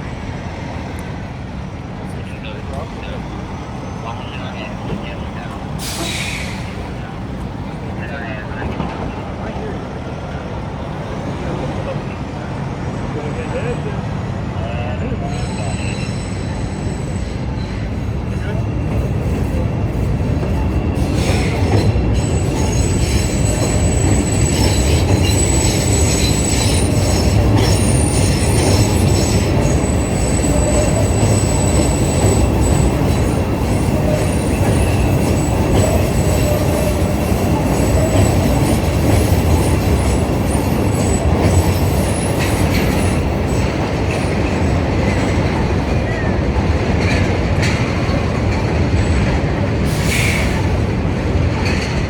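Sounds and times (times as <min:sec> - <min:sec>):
train wheels rumbling on rail: 0:00.0 - 0:52.0
high wheel squeal: 0:03.0 - 0:07.0, 0:13.2 - 0:46.4.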